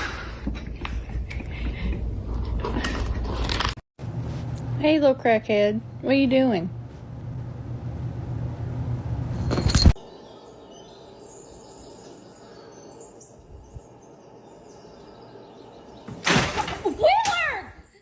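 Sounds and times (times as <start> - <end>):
steady low hum: 4.0 - 16.2
high bird chirps: 10.0 - 16.2.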